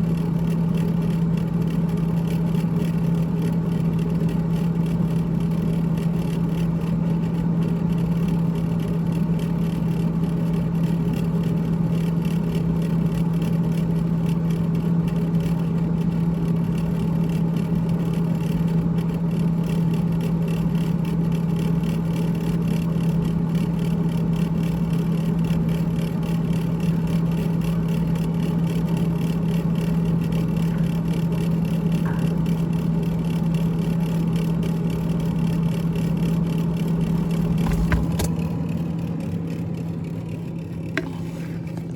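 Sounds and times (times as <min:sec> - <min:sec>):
refrigerator humming: 0:00.0 - 0:41.9
fan rattling: 0:35.7 - 0:41.9.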